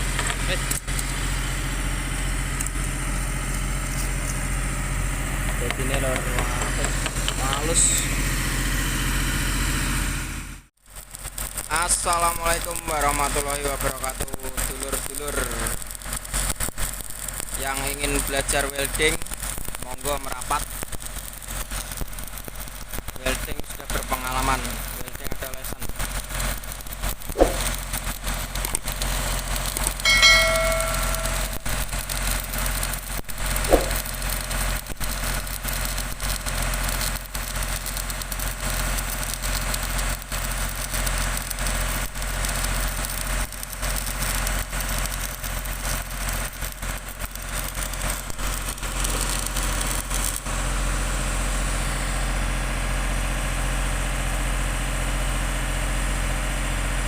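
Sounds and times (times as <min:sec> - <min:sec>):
arc welding crackle: 0:00.0 - 0:09.3, 0:10.7 - 0:56.5
welding machine mains hum: 0:00.0 - 0:57.0
brief ringing tone: 0:30.0 - 0:31.8.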